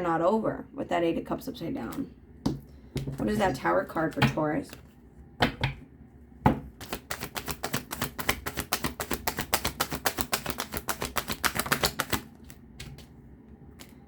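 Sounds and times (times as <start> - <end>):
cards being shuffled: 6.7 - 13.2.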